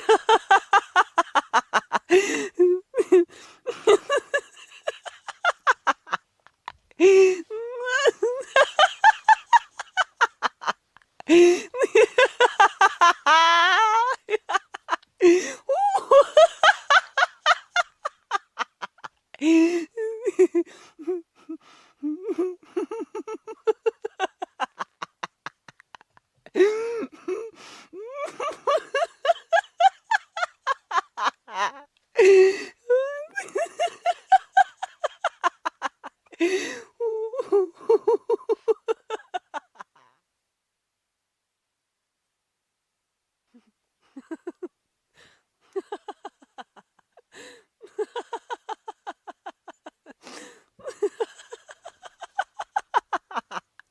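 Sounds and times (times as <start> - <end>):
person laughing hard: 0.0 - 6.2, 7.0 - 40.1, 44.1 - 44.7, 45.7 - 53.8
gasping in-breaths: 2.1 - 2.6, 3.3 - 3.9, 11.2 - 11.8, 15.2 - 15.8, 19.4 - 20.0, 32.2 - 32.9, 36.3 - 37.0, 47.3 - 47.8, 50.2 - 50.8.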